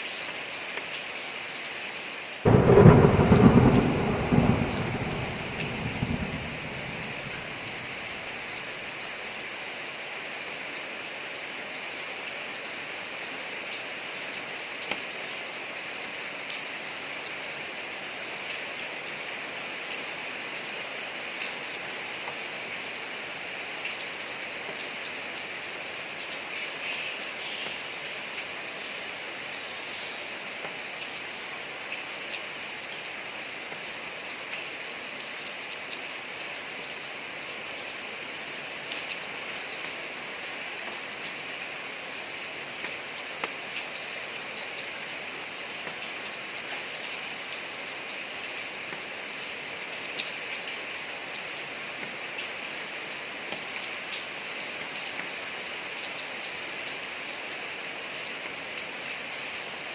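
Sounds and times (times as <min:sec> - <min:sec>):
steady rain hiss: 0:00.0 - 0:59.9
raindrop ticks: 0:02.5 - 0:08.6.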